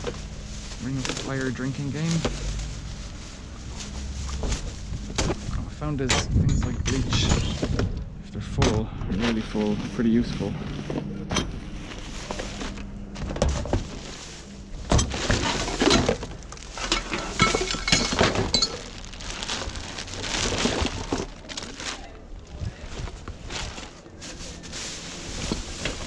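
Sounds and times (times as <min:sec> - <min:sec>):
bottles and glass clinking: 0:15.0 - 0:19.0.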